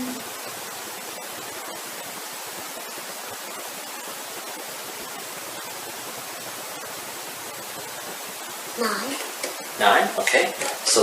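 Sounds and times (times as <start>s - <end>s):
steady background hiss: 0.0s - 11.0s.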